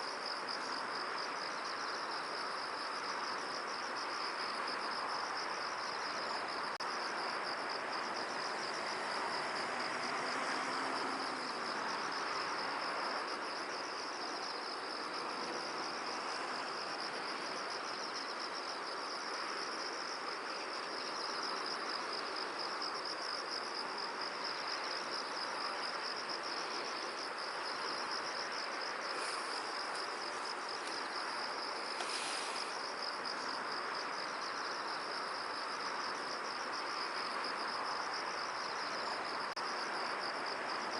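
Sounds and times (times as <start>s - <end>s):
crickets chirping: 0.0s - 40.9s.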